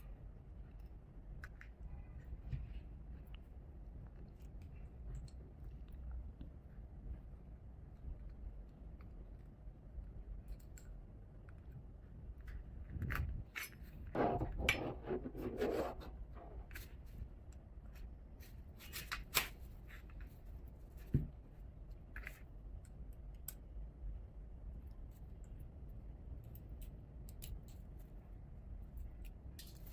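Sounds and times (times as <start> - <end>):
metal parts scraping and rubbing: 13.6 - 16.9.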